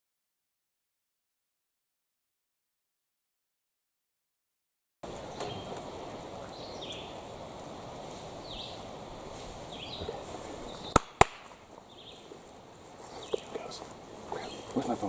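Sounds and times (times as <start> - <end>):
steady background hiss: 5.0 - 15.0
bird chirping: 5.2 - 7.4, 8.4 - 8.9, 9.6 - 15.0.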